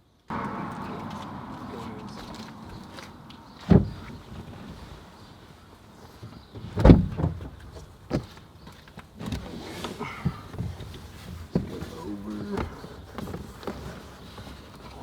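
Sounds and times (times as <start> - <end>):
dull thumps and knocks: 3.6 - 4.7, 6.3 - 8.4.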